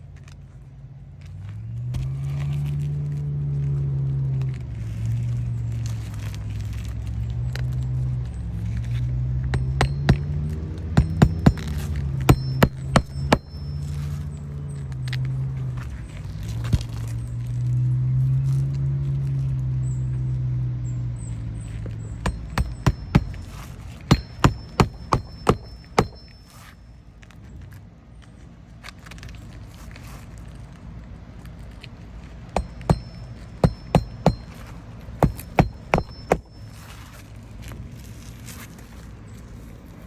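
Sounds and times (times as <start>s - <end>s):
low engine hum: 0.0s - 40.0s
hammer striking nails: 9.5s - 13.7s, 22.2s - 26.5s, 32.6s - 36.6s.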